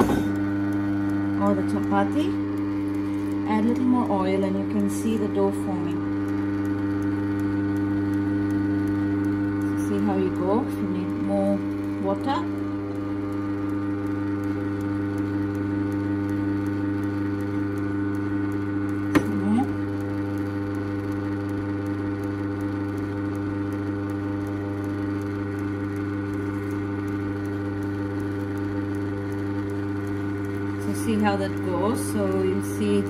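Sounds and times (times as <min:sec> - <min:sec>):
grinder motor humming: 0:00.0 - 0:33.0.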